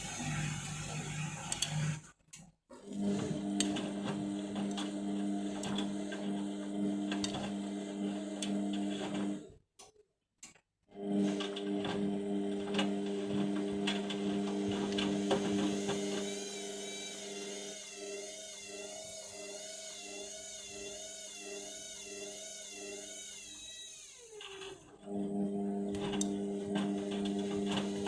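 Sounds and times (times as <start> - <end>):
wavering motor whine: 0.0 - 2.0
washing machine motor hum: 0.0 - 2.1, 2.8 - 9.5, 10.9 - 28.0.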